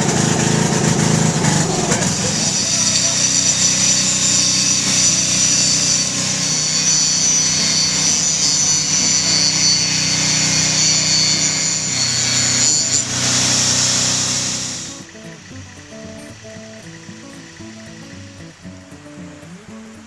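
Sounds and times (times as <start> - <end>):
circular saw blade whine: 0.0 - 18.4
machinery hum: 0.0 - 20.0.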